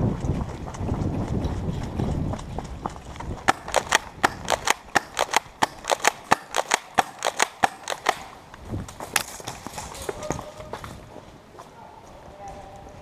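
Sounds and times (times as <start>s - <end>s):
airsoft gun shots snapping: 3.5s - 8.4s.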